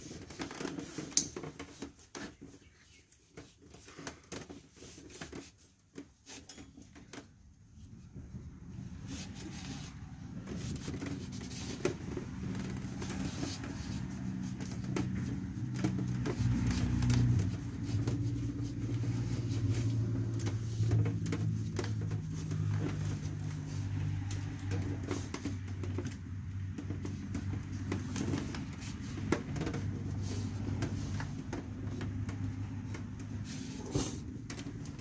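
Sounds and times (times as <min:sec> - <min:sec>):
vehicle engine running: 0:08.3 - 0:35.0.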